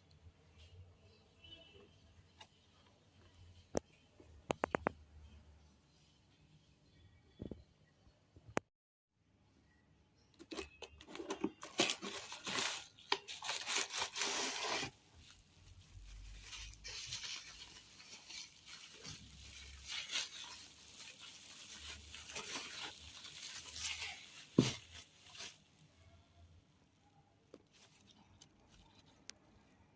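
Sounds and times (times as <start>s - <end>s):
packaging tearing and crinkling: 11.1s - 25.6s.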